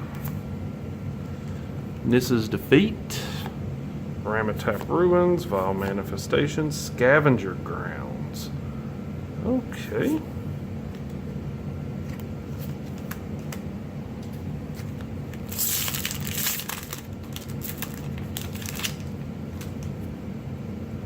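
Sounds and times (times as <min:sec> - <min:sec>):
foil wrapper crinkling and tearing: 0:14.7 - 0:20.0.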